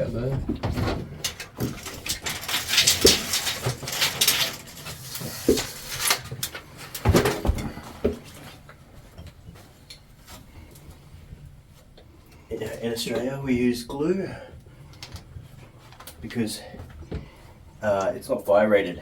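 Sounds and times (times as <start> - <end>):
knocks and rough handling sounds: 0.0 - 11.0
scraping on drywall: 1.8 - 6.4.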